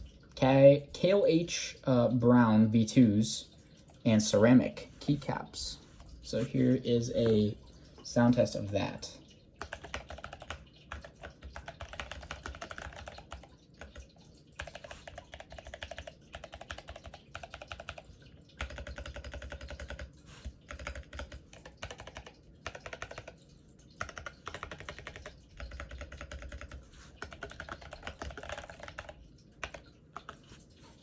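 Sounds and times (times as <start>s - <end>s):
mechanical keyboard typing: 9.6s - 23.4s, 24.0s - 30.4s.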